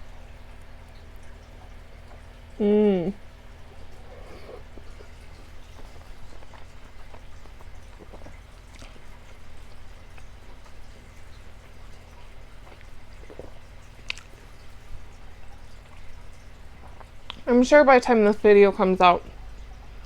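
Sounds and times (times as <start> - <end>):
chewing smacks and clicks: 3.9 - 14.7, 15.4 - 17.5.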